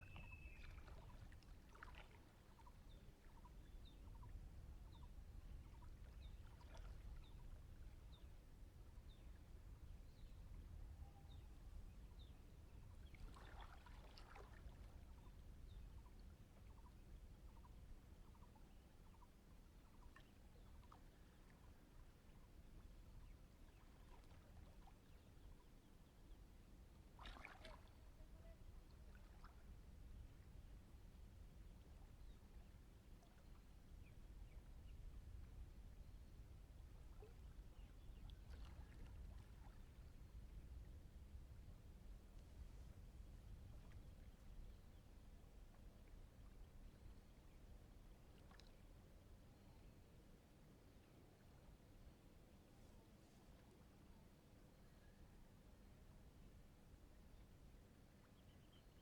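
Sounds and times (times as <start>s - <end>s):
river water lapping: 0.1s - 3.6s, 5.6s - 7.6s, 13.0s - 16.8s, 23.5s - 25.6s, 27.0s - 29.9s, 37.1s - 40.3s, 45.6s - 49.7s.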